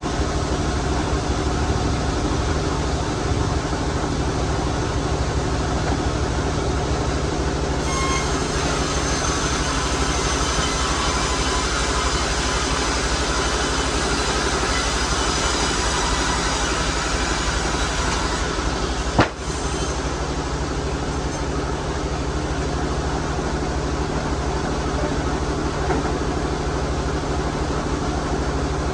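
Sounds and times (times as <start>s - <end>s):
sawmill machinery humming: 0.0s - 28.9s
sharp knock: 19.2s - 19.4s.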